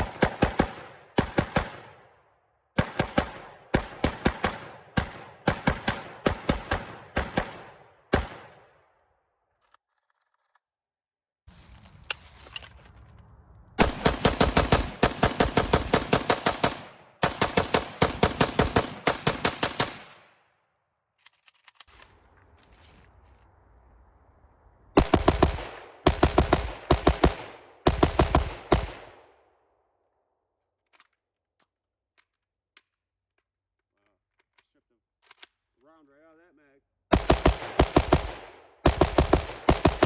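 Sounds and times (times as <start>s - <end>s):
rifle firing rapidly: 0.0s - 2.0s, 2.8s - 8.7s, 13.8s - 20.3s, 25.0s - 29.4s, 37.1s - 40.0s.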